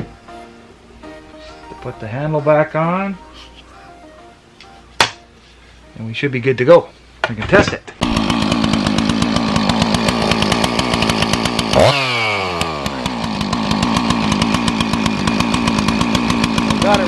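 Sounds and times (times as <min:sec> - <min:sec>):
chainsaw throttle blip: 0:08.0 - 0:16.9
chainsaw running: 0:08.0 - 0:17.0.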